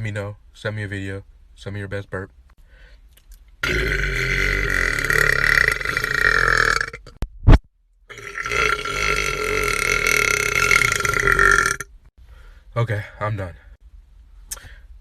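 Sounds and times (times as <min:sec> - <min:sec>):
man burping: 0:03.6 - 0:07.2, 0:08.1 - 0:11.9.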